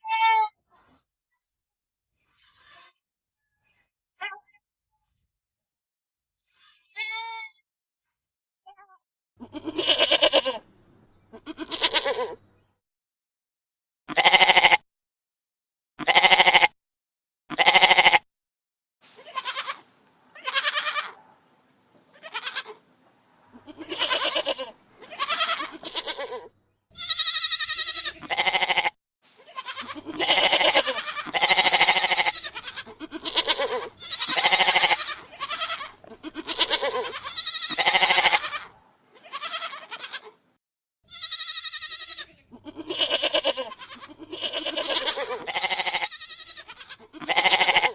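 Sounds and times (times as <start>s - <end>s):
goat bleating: 0.0s - 0.5s, 8.8s - 12.6s, 14.1s - 14.8s, 16.0s - 16.8s, 17.5s - 18.2s, 19.1s - 21.3s, 22.1s - 22.8s, 23.4s - 40.4s, 41.1s - 47.9s.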